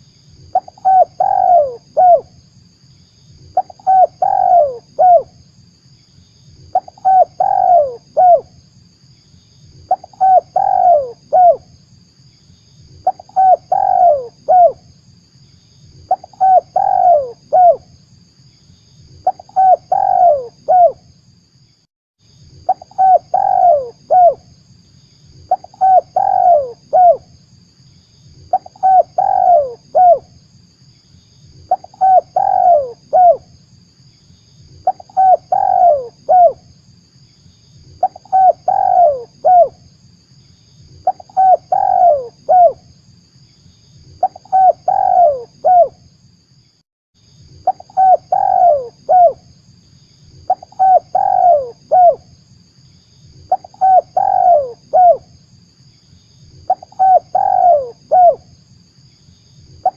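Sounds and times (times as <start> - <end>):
faint steady hiss: 0.0 - 59.9
dove cooing: 0.5 - 2.3, 3.6 - 5.3, 6.7 - 8.5, 9.9 - 11.6, 13.0 - 14.8, 16.1 - 17.8, 19.2 - 21.0, 22.7 - 24.4, 25.5 - 27.2, 28.5 - 30.3, 31.7 - 33.5, 34.8 - 36.6, 38.0 - 39.8, 41.0 - 42.8, 44.2 - 46.0, 47.6 - 49.4, 50.5 - 52.2, 53.5 - 55.3, 56.7 - 58.4.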